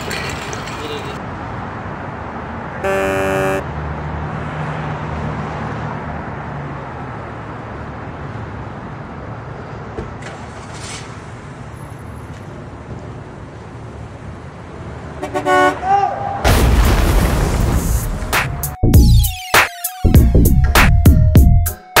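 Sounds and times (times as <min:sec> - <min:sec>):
horn honk: 0:02.8 - 0:03.7, 0:15.2 - 0:16.3.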